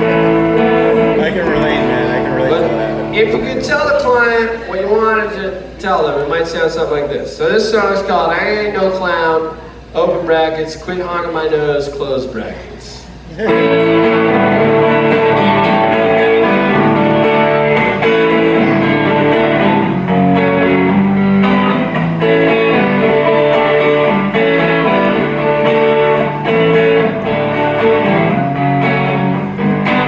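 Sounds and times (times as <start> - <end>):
bass line: 0.0 - 4.4, 13.3 - 30.0
strummed guitars: 0.0 - 4.7, 13.3 - 30.0.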